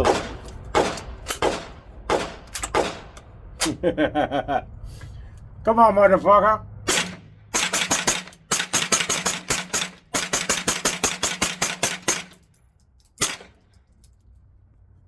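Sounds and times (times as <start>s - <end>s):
rapid gunshots: 0.0s - 3.1s, 6.9s - 12.3s.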